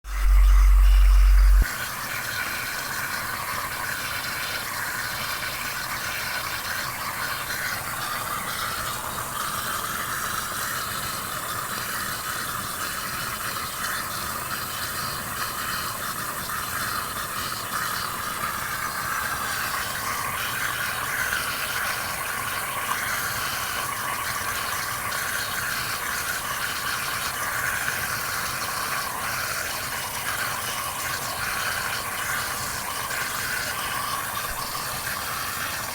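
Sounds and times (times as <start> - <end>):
water bubbling: 0.0 - 1.7
dishwasher running: 0.0 - 11.7, 26.4 - 35.9.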